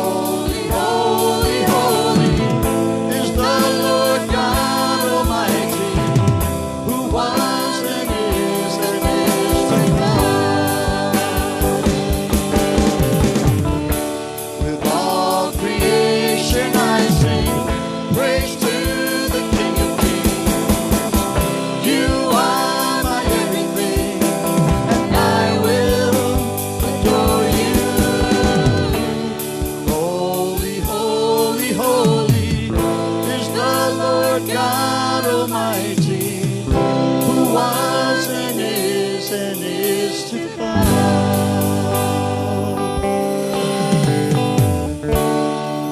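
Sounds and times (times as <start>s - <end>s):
gospel singers over a band: 0.0s - 45.9s.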